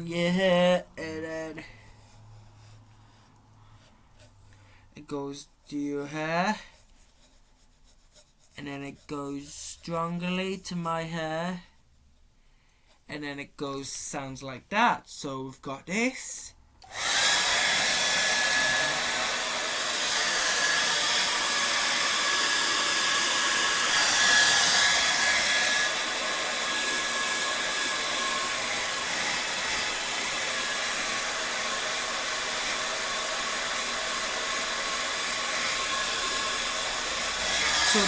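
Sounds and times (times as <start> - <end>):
hair dryer running: 16.8 - 38.0.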